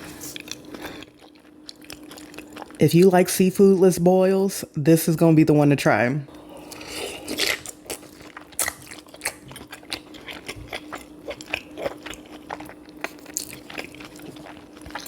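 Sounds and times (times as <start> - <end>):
biting and chewing food: 0.0 - 2.8, 6.6 - 15.0.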